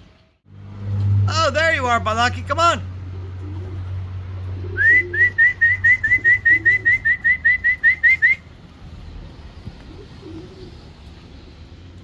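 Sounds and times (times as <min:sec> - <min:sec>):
pigeons cooing: 0:02.9 - 0:12.0
rising whistle notes: 0:04.8 - 0:08.5.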